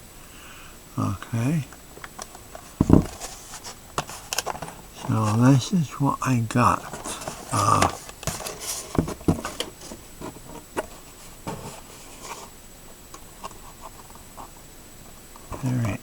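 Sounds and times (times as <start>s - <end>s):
blister pack handling noises: 2.0s - 5.6s, 6.6s - 12.5s.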